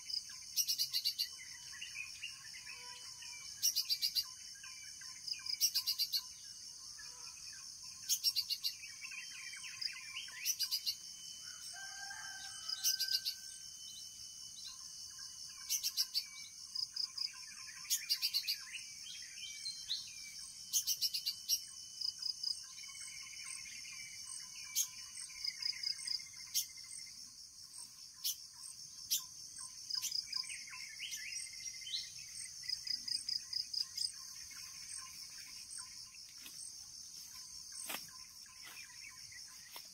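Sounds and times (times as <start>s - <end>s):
birds chirping and calling: 7.9s - 11.1s, 14.6s - 21.8s.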